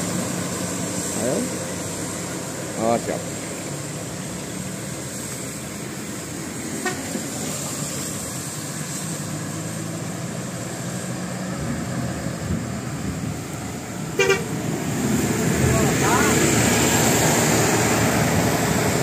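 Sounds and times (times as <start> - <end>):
vehicle engine hum: 0.0 - 19.0
short horn toot: 14.2 - 14.5.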